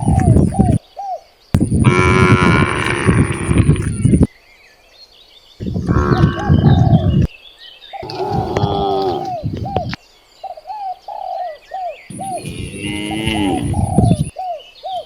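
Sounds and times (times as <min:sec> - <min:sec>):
cattle mooing: 0:01.8 - 0:04.3, 0:05.6 - 0:07.3, 0:08.0 - 0:10.0, 0:12.1 - 0:14.3.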